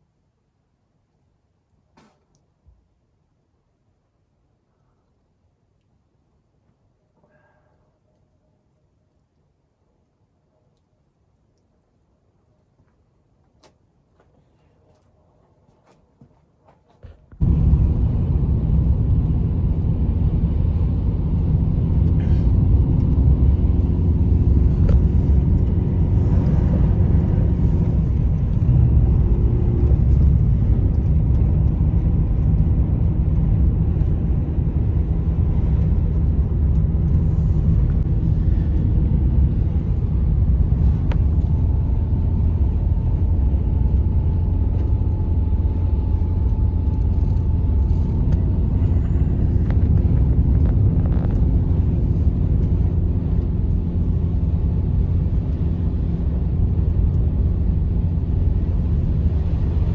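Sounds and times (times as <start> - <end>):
blizzard wind rumbling: 17.4 - 59.9.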